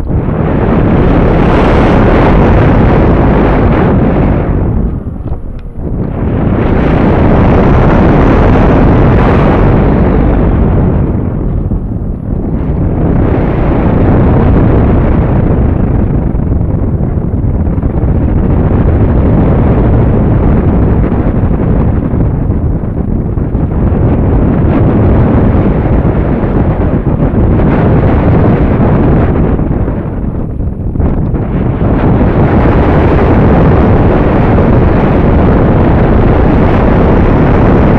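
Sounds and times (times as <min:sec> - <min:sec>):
electric motor and propeller: 0:00.0 - 0:37.9
wind buffeting microphone: 0:00.0 - 0:37.9.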